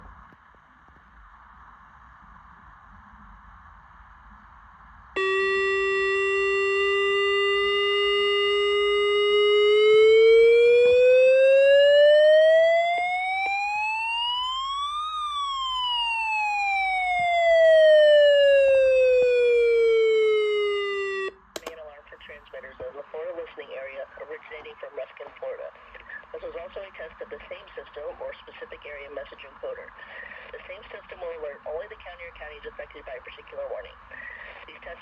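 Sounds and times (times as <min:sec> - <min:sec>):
electronic alert siren: 0:05.2 - 0:21.7.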